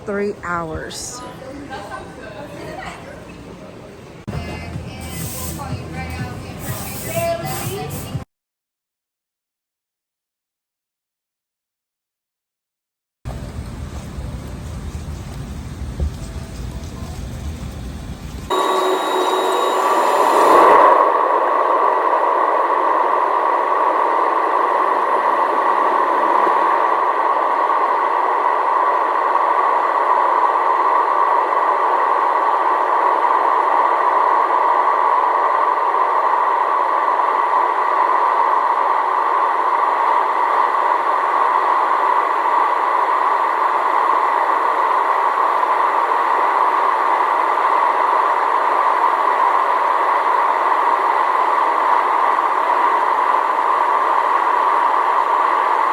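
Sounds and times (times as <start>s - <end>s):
airplane cabin engine drone: 0.0s - 8.2s, 13.3s - 55.9s
faint steady tone: 18.5s - 44.8s.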